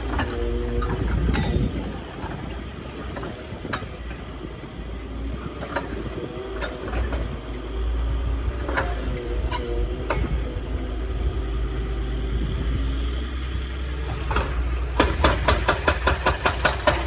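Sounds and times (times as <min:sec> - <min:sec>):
diesel engine running: 0:00.0 - 0:17.0
sharp metallic knocks: 0:14.2 - 0:17.0.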